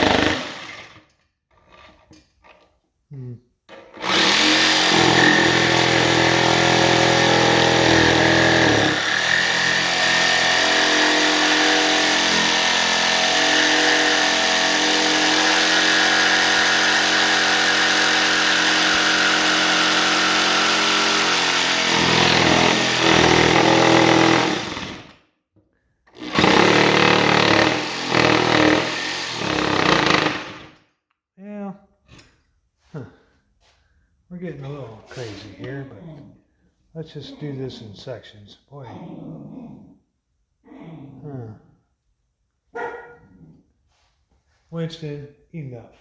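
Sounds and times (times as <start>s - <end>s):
jigsaw cutting: 0.0s - 2.2s, 3.7s - 25.2s, 26.1s - 30.8s.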